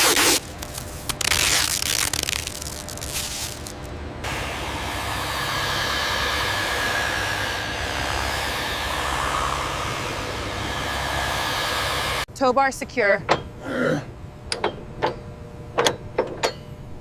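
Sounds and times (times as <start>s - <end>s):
steady rushing noise with whine: 0.0s - 12.6s.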